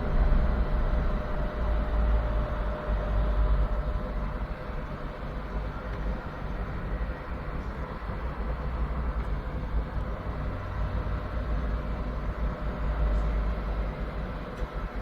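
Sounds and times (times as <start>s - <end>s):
computer cooling fans running: 0.0s - 15.0s.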